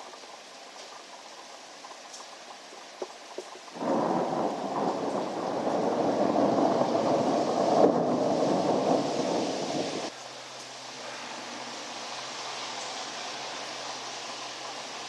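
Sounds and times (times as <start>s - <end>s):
rain hissing: 0.0s - 15.0s
thunder rumbling: 3.8s - 10.1s.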